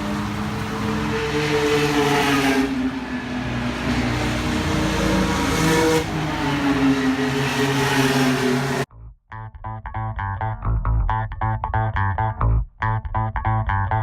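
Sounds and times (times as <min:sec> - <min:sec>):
cars rushing past: 0:00.0 - 0:08.9.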